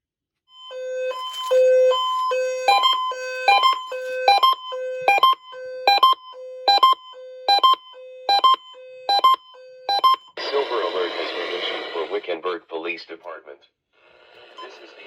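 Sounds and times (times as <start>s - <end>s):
buzzy electronic alert beeps: 0.7s - 10.3s.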